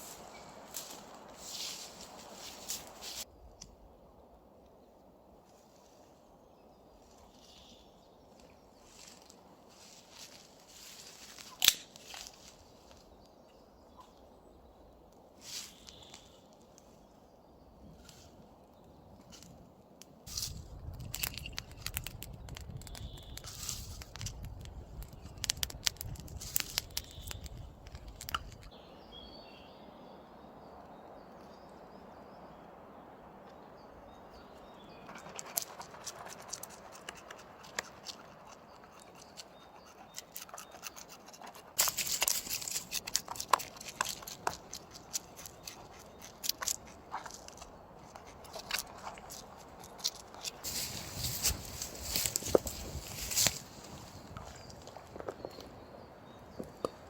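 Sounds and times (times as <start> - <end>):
dry leaves and twigs crunching: 0.0 - 3.3, 7.1 - 13.2, 15.4 - 16.9, 20.3 - 28.8, 40.1 - 55.8
faint bird chirps: 5.6 - 9.2, 12.4 - 19.2, 22.7 - 23.6.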